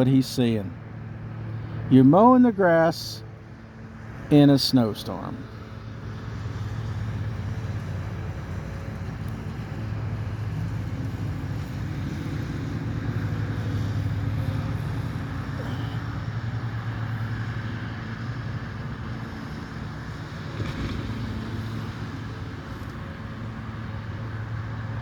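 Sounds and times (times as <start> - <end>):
lawn mower engine running: 5.4 - 25.0.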